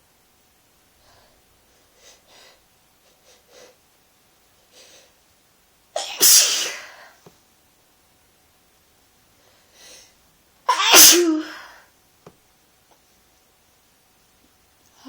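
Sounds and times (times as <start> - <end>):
person sneezing: 6.0 - 7.2, 10.7 - 11.8
faint breaths: 9.3 - 10.3.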